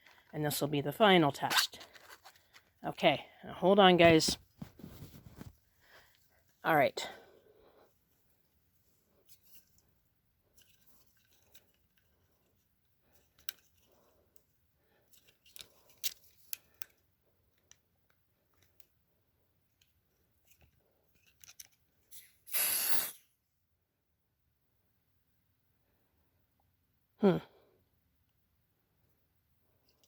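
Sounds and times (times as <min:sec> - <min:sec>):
handling clicks and rustles: 0:01.4 - 0:02.8
aerosol spray hiss: 0:22.5 - 0:23.2.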